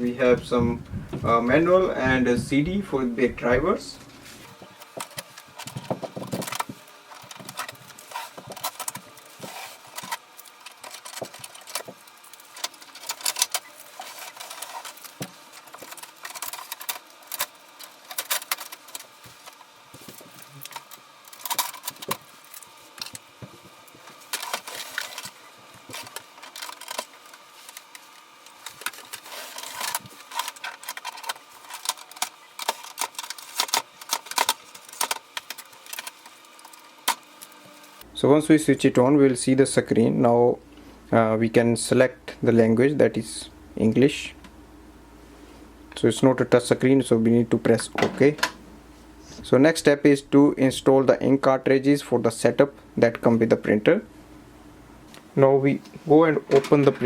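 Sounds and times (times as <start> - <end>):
plastic wrapping crinkling: 4.5 - 38.0.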